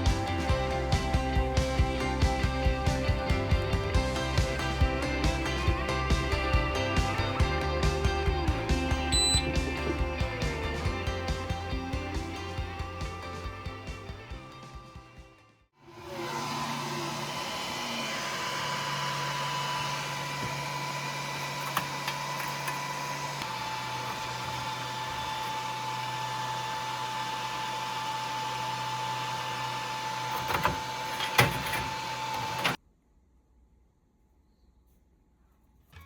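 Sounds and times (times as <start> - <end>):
small machine motor and fan: 15.8 - 32.8.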